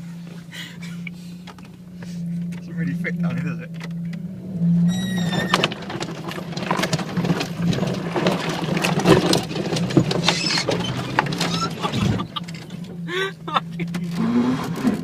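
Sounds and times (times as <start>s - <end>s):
car engine humming: 0.0s - 15.0s
car body scraping along fence: 4.6s - 13.1s, 13.8s - 15.0s.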